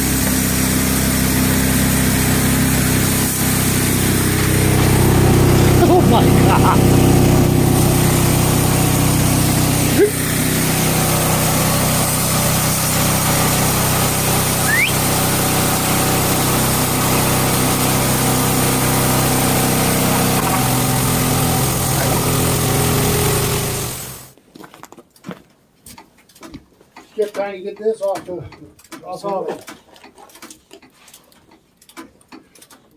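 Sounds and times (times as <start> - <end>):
small gasoline engine running: 0.0 - 24.4.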